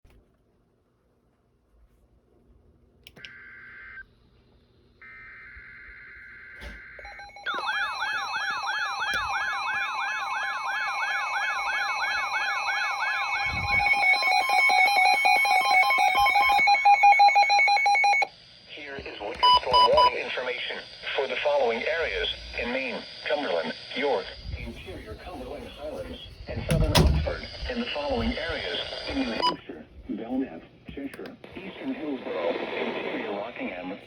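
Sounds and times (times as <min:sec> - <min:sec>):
wailing siren-like tone: 0:05.1 - 0:18.3.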